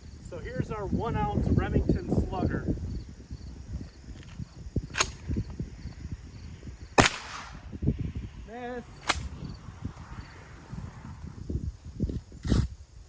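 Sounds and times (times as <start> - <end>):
wind rumble on microphone: 0.0 - 13.0
shotgun shot: 7.0 - 7.7, 9.0 - 9.3.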